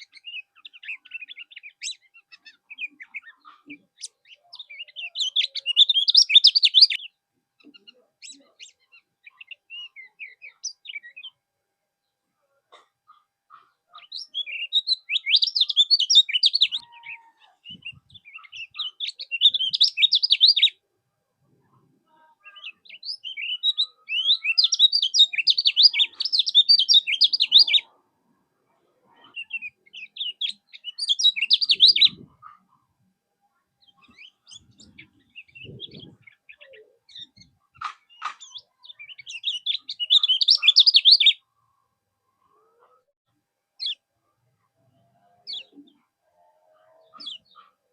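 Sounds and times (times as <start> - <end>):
bird twittering: 13.5 - 20.8, 22.5 - 27.9, 29.3 - 32.6, 33.9 - 41.4.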